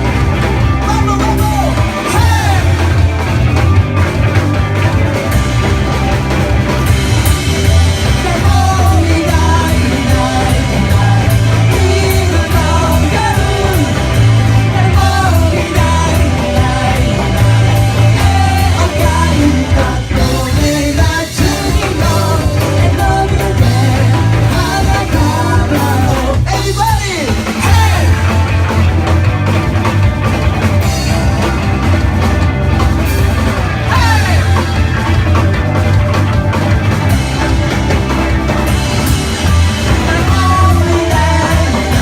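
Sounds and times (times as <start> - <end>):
rock band playing: 0.0 - 42.0
person singing: 8.0 - 28.3, 39.8 - 42.0.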